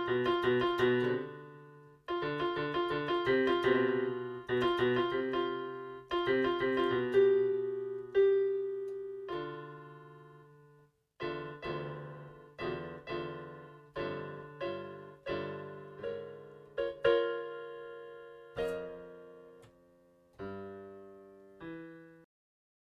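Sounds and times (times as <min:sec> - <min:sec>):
solo piano chords: 0:00.0 - 0:22.3.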